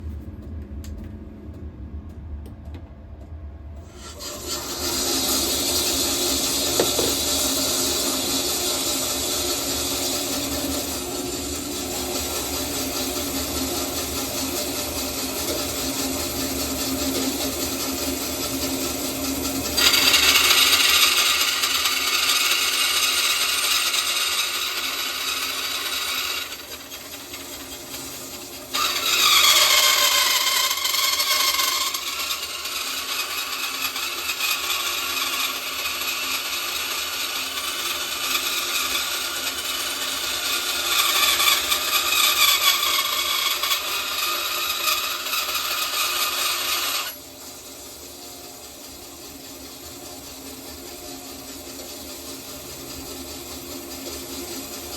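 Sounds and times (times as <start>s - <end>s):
bandsaw running: 3.9s - 54.9s
blade screeching through metal: 19.8s - 47.2s.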